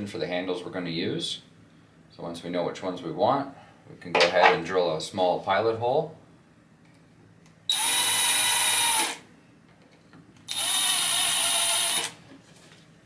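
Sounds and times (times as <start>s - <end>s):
power drill whining: 7.7s - 9.2s, 10.5s - 12.2s.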